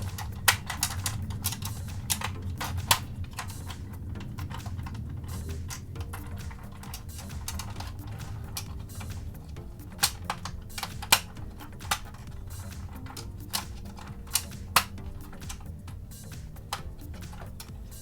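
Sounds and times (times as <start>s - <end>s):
faint background music: 0.0s - 18.0s
plastic toy clicks and snaps: 0.0s - 18.0s.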